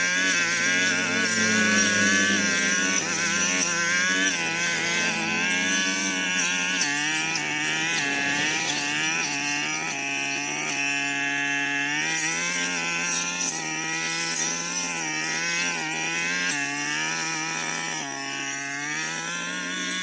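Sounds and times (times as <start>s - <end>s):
brush cutter engine revving: 0.0s - 20.0s.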